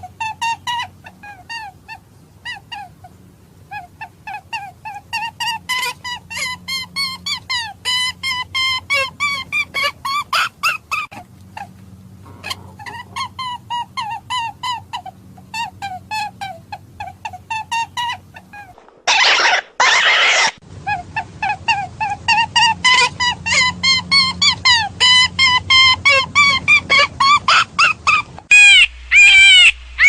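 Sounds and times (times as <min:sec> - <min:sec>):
squealing hunting call notes: 0:28.5 - 0:30.0.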